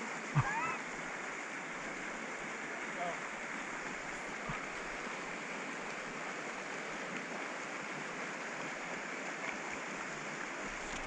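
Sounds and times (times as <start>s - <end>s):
stream water flowing: 0.0s - 11.0s.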